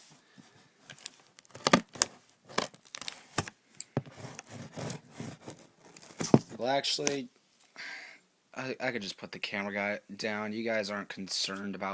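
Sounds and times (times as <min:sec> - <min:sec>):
package tearing and scraping: 0:00.9 - 0:03.5, 0:04.1 - 0:06.5
packaging crinkling: 0:00.9 - 0:03.5.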